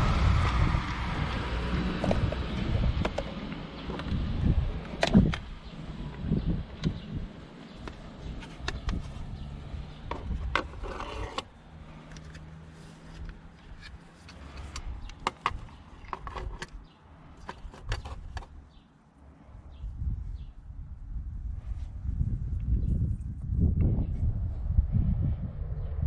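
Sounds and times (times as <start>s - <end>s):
plastic clicks and knocks: 14.3s - 16.8s.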